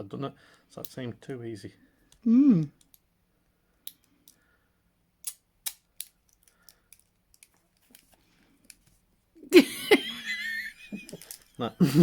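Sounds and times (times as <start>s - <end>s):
handcuffs clicking: 3.8s - 4.4s, 5.2s - 8.8s
loud laughter: 9.6s - 12.0s.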